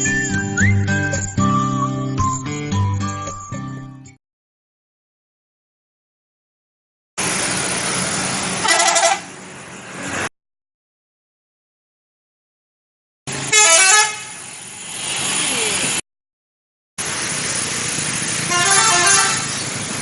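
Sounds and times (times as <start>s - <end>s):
bus engine running: 7.2s - 10.3s, 13.3s - 16.0s, 17.0s - 20.0s
road noise: 7.2s - 10.3s, 13.3s - 16.0s, 17.0s - 20.0s
multi-tone bus horns: 8.6s - 9.4s, 13.3s - 14.5s, 18.4s - 19.6s.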